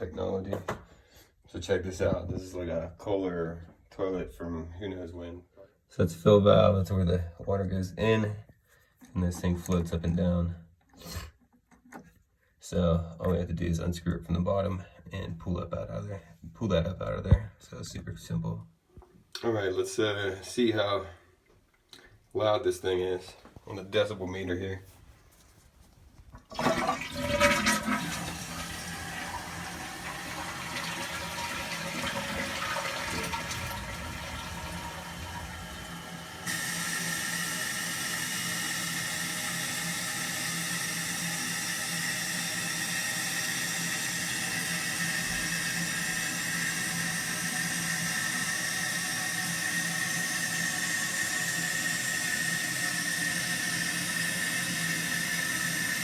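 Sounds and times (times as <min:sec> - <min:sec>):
toilet flushing: 0:26.4 - 0:56.0
tank refilling with hiss and whistle: 0:29.0 - 0:56.0.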